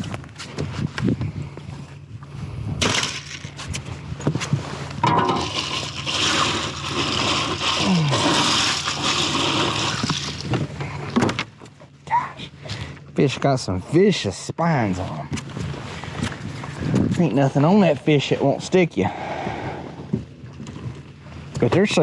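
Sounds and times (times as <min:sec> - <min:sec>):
steady low hum: 0:00.0 - 0:22.0
handling knocks and clatter: 0:02.8 - 0:06.3
water rushing and splashing: 0:05.2 - 0:10.5.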